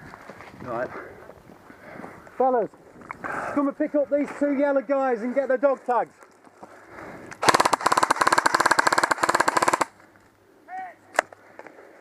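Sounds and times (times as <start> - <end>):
airsoft rifle full-auto burst: 7.4 - 10.0.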